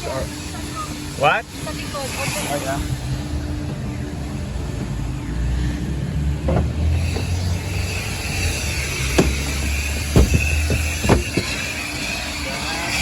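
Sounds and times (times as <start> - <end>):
car vacuum humming and whining: 0.0 - 13.0
sharp knocks and clatters: 9.2 - 11.8.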